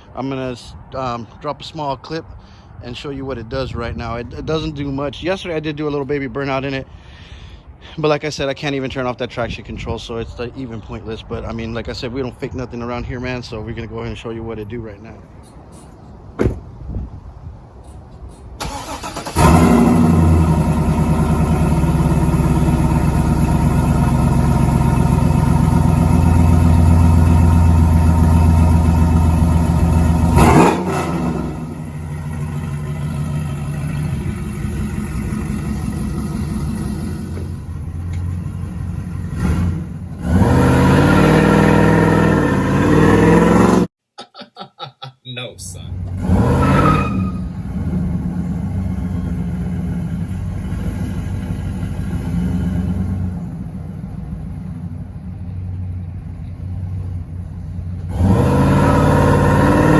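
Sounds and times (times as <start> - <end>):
car engine revving: 18.6 - 43.9, 45.9 - 55.0, 57.0 - 59.9.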